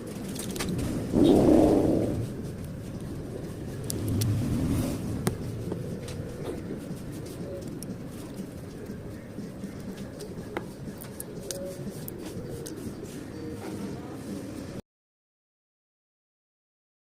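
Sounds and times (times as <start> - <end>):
motor vehicle passing: 0.8 - 8.2.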